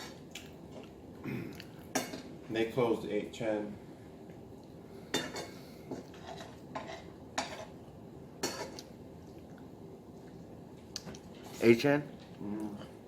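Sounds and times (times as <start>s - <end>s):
dishes and cutlery clinking: 1.9s - 2.3s, 5.1s - 7.8s, 8.4s - 8.9s.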